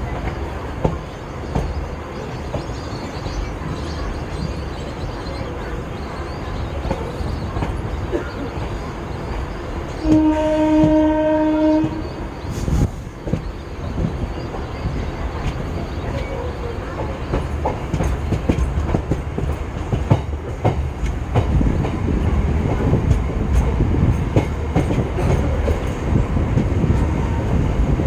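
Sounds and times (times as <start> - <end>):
train wheels rumbling on track: 0.0 - 28.0
train horn blast: 10.0 - 12.3.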